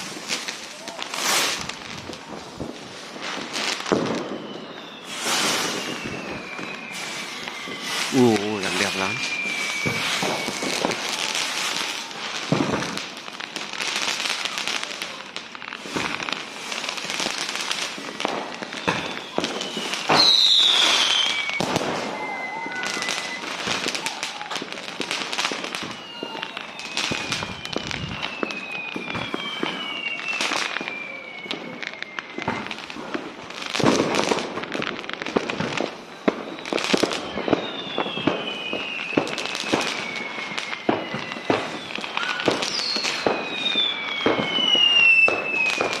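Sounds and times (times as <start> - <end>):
falling whistles: 0.0 - 13.6, 15.9 - 34.6, 35.4 - 46.0
fireworks bangs and crackles: 0.0 - 46.0.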